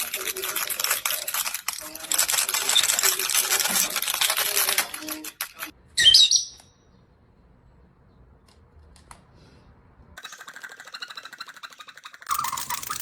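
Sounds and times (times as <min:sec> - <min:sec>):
parrot toy clattering: 0:00.0 - 0:05.7, 0:10.2 - 0:13.0.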